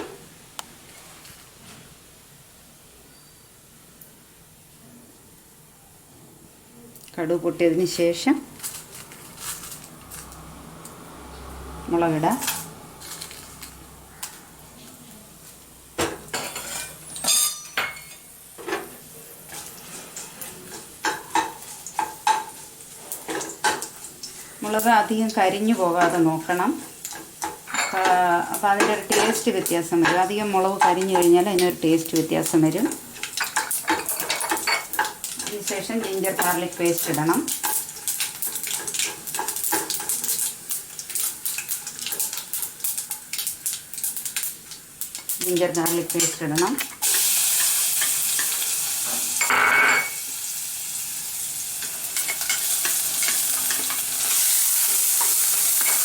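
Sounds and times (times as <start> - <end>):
oil sizzling: 5.3 - 56.0
spoon stirring and scraping pan: 16.1 - 24.6, 25.2 - 49.4, 51.8 - 56.0.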